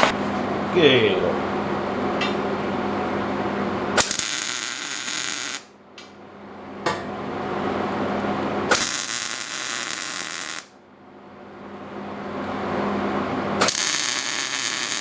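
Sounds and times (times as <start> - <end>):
steady shop hum: 0.0 - 15.0
arc welding crackling hiss: 4.0 - 5.7, 8.7 - 10.7, 13.6 - 15.0.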